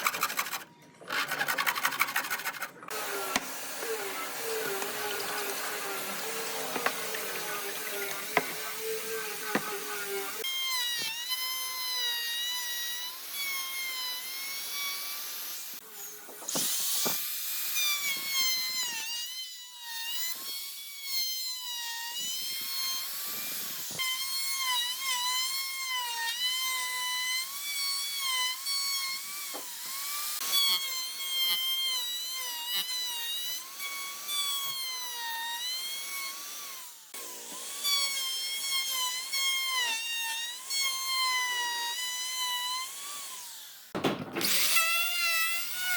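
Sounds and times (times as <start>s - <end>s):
power tool whining on wood: 0.0s - 45.9s.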